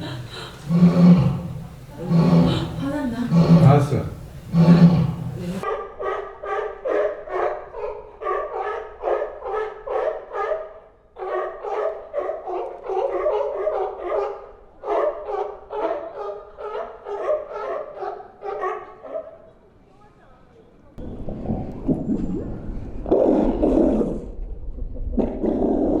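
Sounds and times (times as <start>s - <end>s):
sea lion barking: 0.0s - 5.6s.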